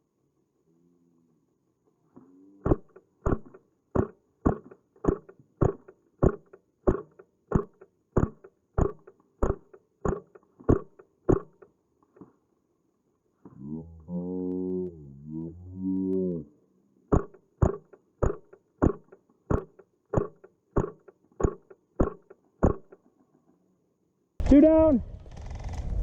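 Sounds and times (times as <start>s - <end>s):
steady beat of sharp thumps: 2.7s - 11.6s, 17.1s - 23.0s
faint high tick: 15.9s - 16.3s.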